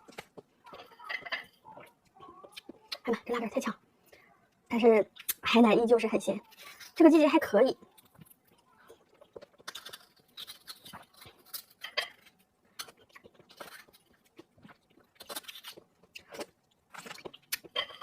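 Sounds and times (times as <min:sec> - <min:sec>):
person chewing: 0:07.8 - 0:18.0.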